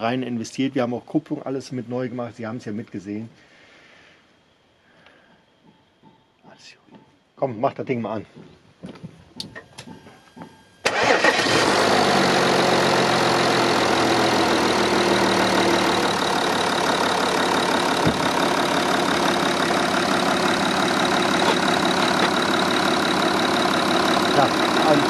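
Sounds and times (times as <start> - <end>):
diesel engine idling: 10.9 - 25.0.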